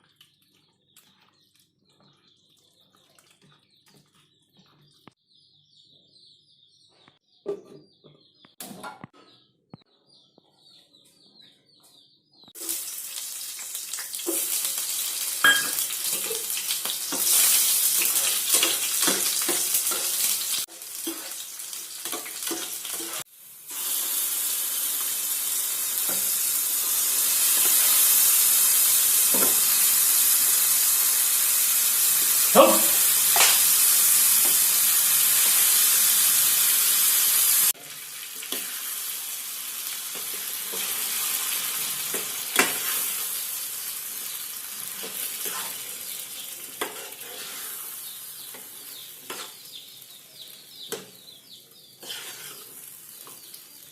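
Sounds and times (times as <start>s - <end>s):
food sizzling in a hot pan: 12.6s - 50.6s, 52.0s - 53.9s
utensil stirring clicks and scrapes: 52.0s - 52.7s.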